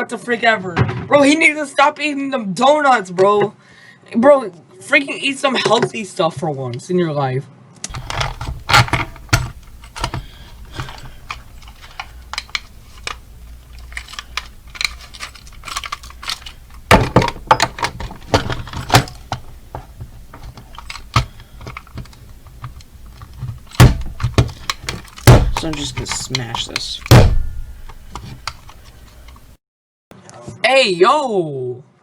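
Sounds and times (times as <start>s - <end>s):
hard objects clicking and clattering: 7.9s - 29.6s
loud knocks: 23.8s - 26.1s, 27.0s - 28.5s.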